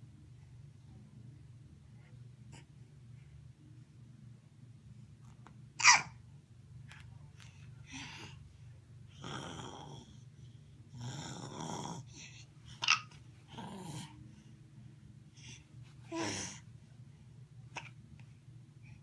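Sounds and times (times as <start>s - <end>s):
faint low hum: 0.0s - 19.0s
baby growling vocal noises: 5.8s - 6.2s, 9.1s - 10.3s, 10.9s - 14.2s, 16.0s - 16.7s
baby hiccup: 5.8s - 6.2s
soft breath: 7.2s - 19.0s.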